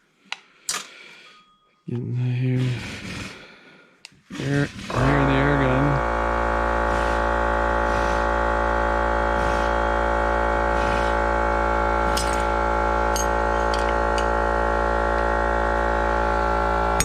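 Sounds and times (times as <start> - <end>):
steady droning hum: 4.4 - 17.0.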